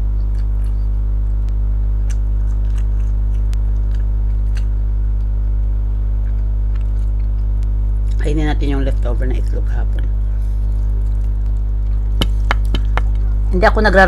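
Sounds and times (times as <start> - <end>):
person chewing food: 0.0 - 8.2, 8.9 - 13.5
steady low hum: 0.0 - 14.0
mouth clicks and smacks: 0.1 - 5.4, 6.2 - 8.2, 9.9 - 13.4.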